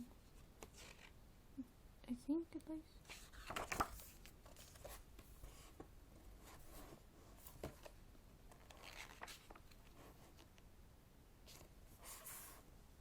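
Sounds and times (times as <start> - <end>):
book pages turning: 0.6 - 1.2, 3.1 - 5.8, 6.5 - 10.5.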